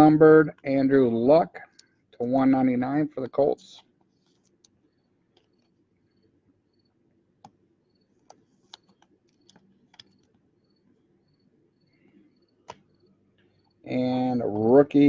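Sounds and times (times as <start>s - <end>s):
trading cards clicking and tapping: 8.2s - 10.4s.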